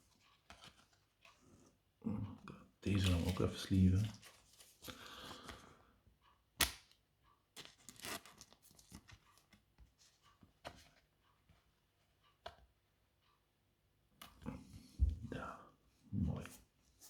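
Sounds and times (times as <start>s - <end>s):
plastic card sleeve snap: 6.6s - 7.0s
plastic crinkles and clicks: 7.6s - 9.6s.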